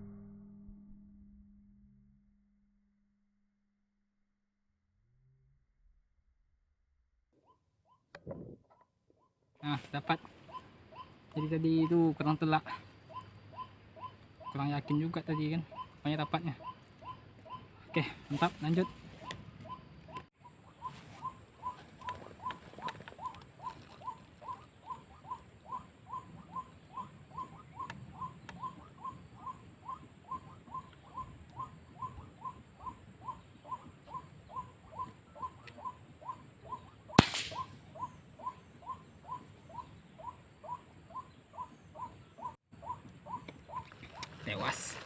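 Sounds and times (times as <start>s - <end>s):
bird call notes: 9.6s - 45.0s
gunshot: 37.2s - 37.7s.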